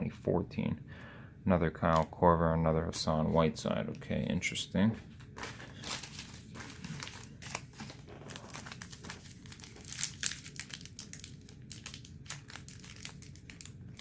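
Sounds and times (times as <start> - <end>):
wrapper crinkling and crackling: 5.4 - 14.0.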